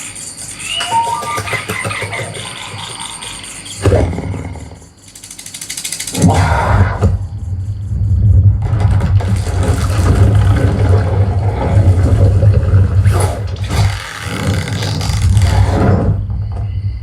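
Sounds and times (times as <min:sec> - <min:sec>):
heavy low rumble: 0:06.2 - 0:13.7.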